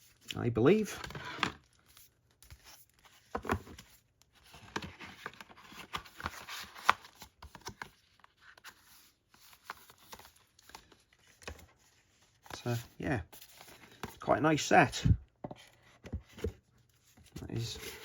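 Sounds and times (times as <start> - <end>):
paper packaging rustling: 0.1 - 14.4.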